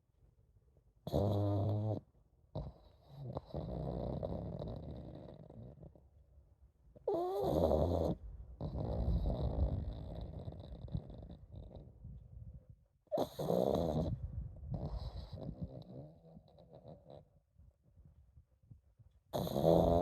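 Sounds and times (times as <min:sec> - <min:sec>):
dog snoring: 0:01.0 - 0:06.0, 0:07.0 - 0:11.9, 0:13.1 - 0:17.3, 0:19.3 - 0:20.0
dog snort with whistle: 0:01.1 - 0:02.0, 0:13.1 - 0:14.2, 0:19.3 - 0:20.0.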